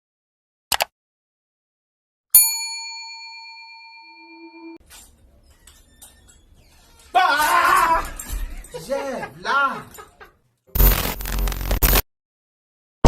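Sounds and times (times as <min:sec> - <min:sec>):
bell-like ding: 0:02.4 - 0:04.8.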